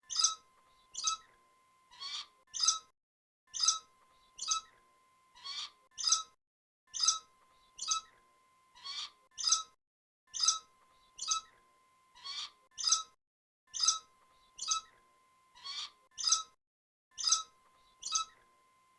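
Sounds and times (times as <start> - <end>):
rat squeaking: 0.0 - 1.3, 1.9 - 2.9, 3.5 - 8.2, 8.8 - 15.0, 15.6 - 16.6, 17.2 - 18.4.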